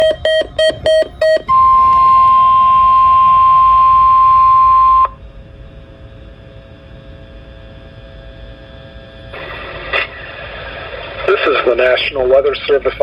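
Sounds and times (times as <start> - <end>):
quick beeps: 0.0 - 5.1
warning alarm tone: 0.0 - 5.2
faint hum: 0.0 - 13.0.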